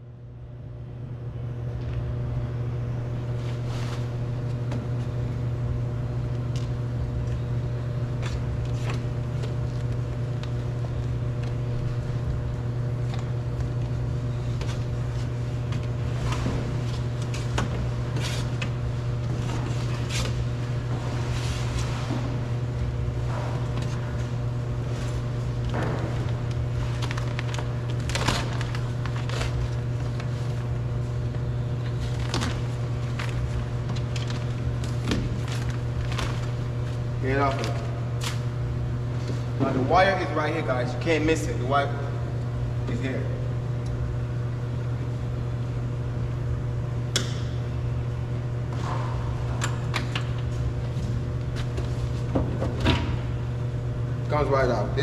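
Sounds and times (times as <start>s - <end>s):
low mechanical hum: 0.0s - 55.0s
plastic rustling: 26.0s - 30.6s, 31.9s - 38.4s.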